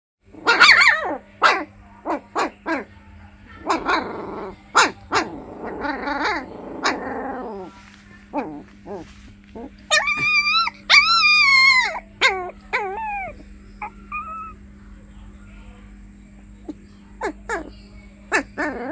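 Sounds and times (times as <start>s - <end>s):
faint steady hum: 0.2s - 18.9s
puppy yelping and whimpering: 0.4s - 2.8s, 3.6s - 14.6s, 18.3s - 18.9s
puppy whining: 0.4s - 2.9s, 3.6s - 14.6s, 16.6s - 17.7s, 18.3s - 18.9s.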